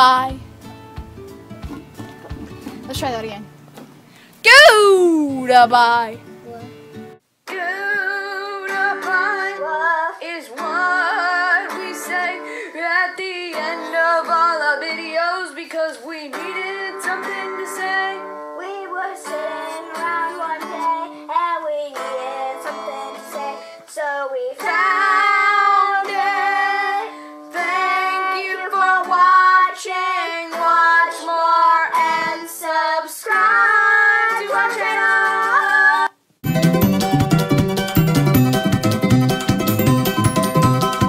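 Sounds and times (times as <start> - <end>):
high voice singing: 4.4 - 6.2
plucked guitar: 36.4 - 41.0.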